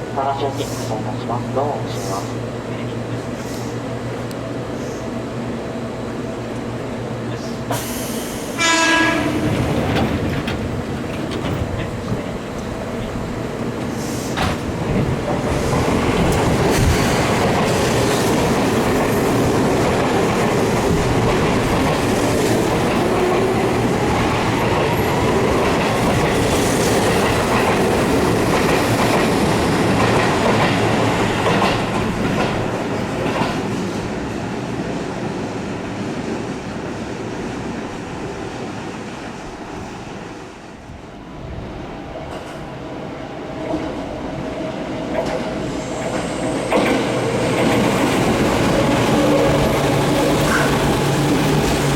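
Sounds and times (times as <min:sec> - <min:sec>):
train whine gliding in pitch: 0:07.7 - 0:14.0, 0:15.0 - 0:51.9
train wheels clattering: 0:13.8 - 0:34.1, 0:45.1 - 0:51.9.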